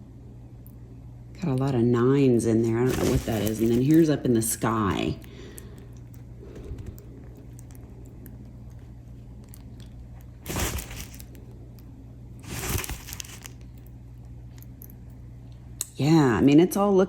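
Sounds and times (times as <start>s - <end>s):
low steady hum: 0.0s - 17.0s
plastic crinkling rustles: 2.6s - 4.6s, 5.4s - 13.9s.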